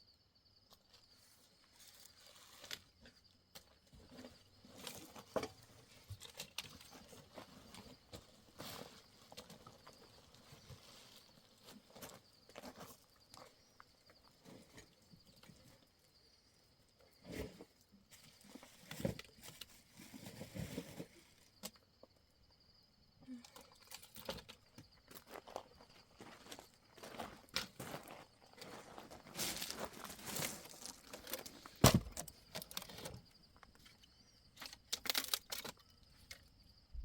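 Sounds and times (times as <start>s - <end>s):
rustling and crunching on rough ground: 0.6s - 37.0s.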